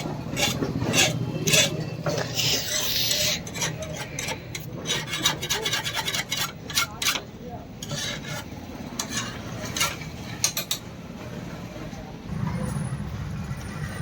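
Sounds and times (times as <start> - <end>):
file rasping on steel blade: 0.0 - 10.6.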